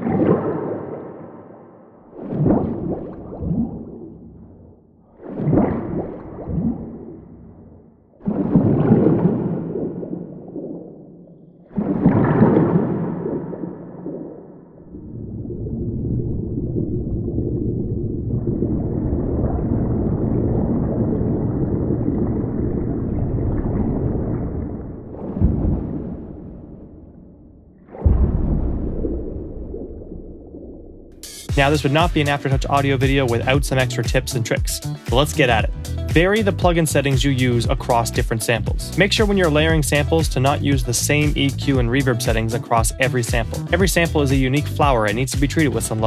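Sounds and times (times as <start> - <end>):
long underwater wash: 0.0 - 36.1
muffled underwater water sounds: 0.0 - 46.0
sudden splash-like hits: 23.6 - 34.2.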